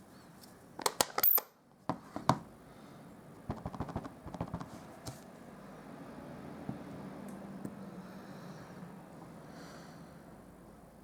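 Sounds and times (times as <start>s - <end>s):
rubber stamp clicks and taps: 3.5s - 4.7s.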